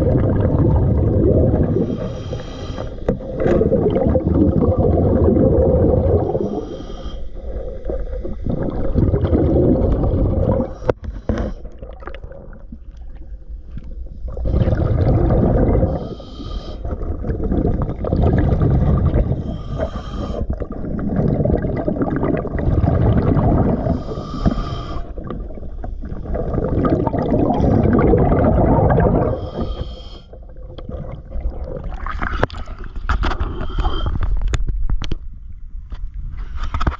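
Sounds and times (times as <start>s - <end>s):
diver exhaling bubbles underwater: 0.0s - 34.5s
diver inhaling through regulator: 1.3s - 3.4s, 5.4s - 11.8s, 14.4s - 17.2s, 19.2s - 20.8s, 23.4s - 25.5s, 28.7s - 30.6s, 32.7s - 34.5s.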